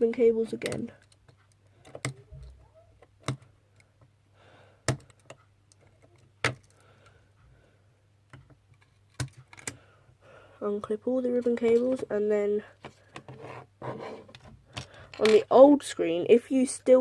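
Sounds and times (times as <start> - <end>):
connectors unclipping clicks: 8.3 - 9.8.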